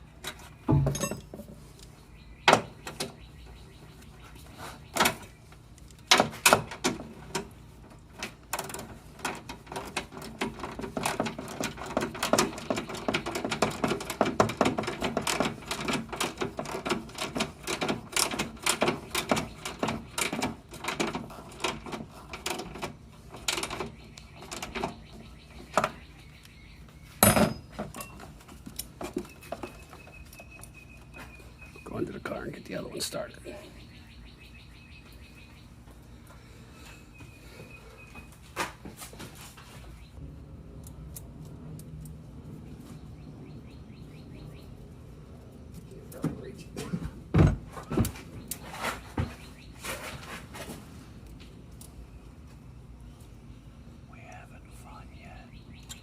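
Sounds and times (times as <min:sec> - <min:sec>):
metal tools clicking and clinking: 0:00.8 - 0:01.4.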